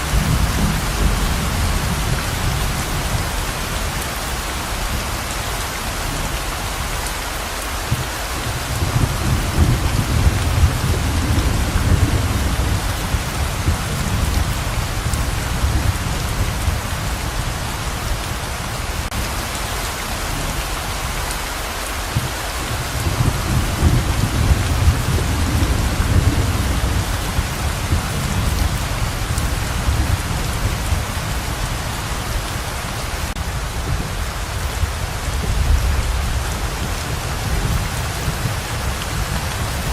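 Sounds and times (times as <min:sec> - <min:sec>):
pouring rain: 0:00.0 - 0:39.9
rolls of thunder: 0:08.7 - 0:17.1, 0:22.7 - 0:31.4.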